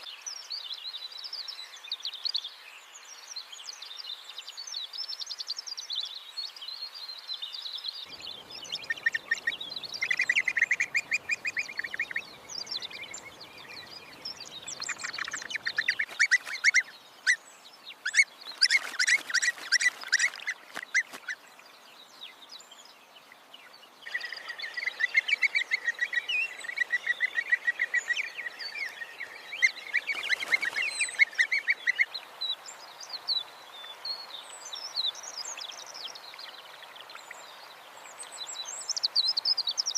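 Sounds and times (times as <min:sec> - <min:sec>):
birds trilling: 0:08.1 - 0:17.4, 0:18.0 - 0:21.4, 0:24.1 - 0:32.1
high bird chirps: 0:08.1 - 0:17.4.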